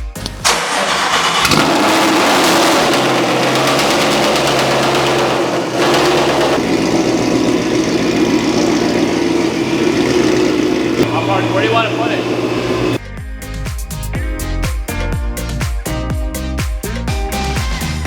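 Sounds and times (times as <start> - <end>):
car engine starting and running: 0.0 - 13.0
steady hum: 3.0 - 13.0.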